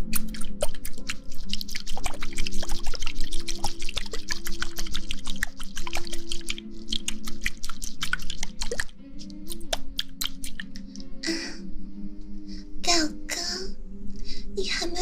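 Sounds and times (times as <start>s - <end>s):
wet crackling and squishing clicks: 0.0s - 11.0s
faint steady tone: 10.7s - 15.0s.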